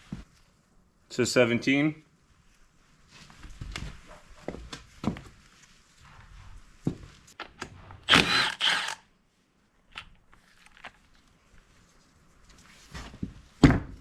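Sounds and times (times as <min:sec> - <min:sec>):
rasping bursts: 0:08.1 - 0:09.0.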